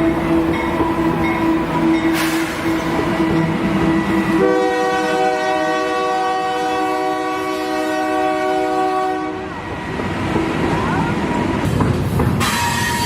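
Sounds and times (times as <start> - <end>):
train running past: 0.0 - 13.0
train horn chord: 1.4 - 9.6, 12.4 - 13.0.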